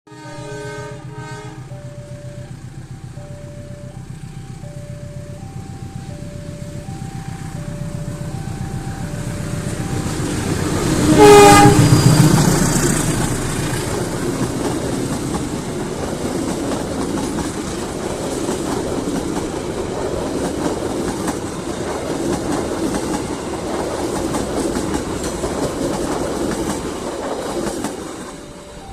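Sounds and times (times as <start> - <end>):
locomotive horn: 0.1 - 2.0, 9.5 - 13.0
train coaches rumbling and clacking: 0.2 - 28.9
two-tone warning chime: 1.6 - 13.0, 28.2 - 28.9.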